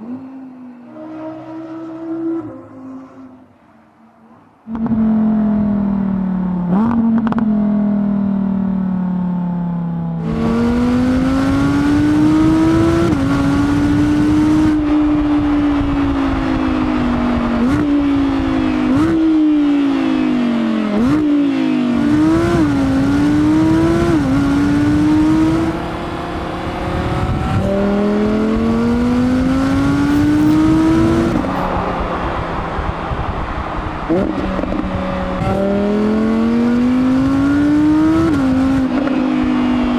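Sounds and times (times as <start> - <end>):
race car engine revving: 0.0 - 7.7, 10.2 - 39.9
gear changes: 16.0 - 39.9.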